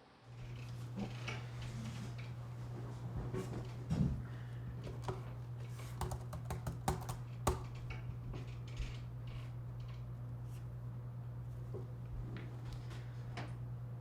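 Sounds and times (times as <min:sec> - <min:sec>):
keyboard key clicks: 0:06.0 - 0:07.7.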